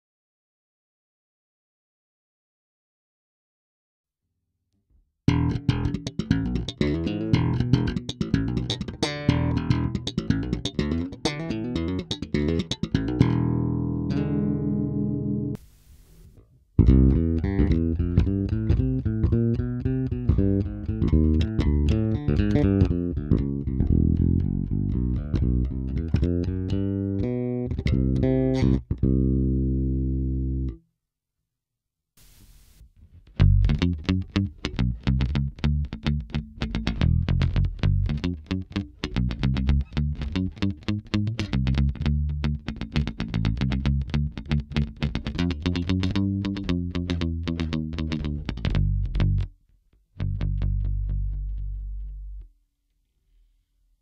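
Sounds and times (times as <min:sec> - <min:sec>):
electric bass playing: 0:05.3 - 0:15.6, 0:16.8 - 0:30.8, 0:33.3 - 0:52.5
electric bass run of notes: 0:11.6 - 0:15.6, 0:16.8 - 0:30.8.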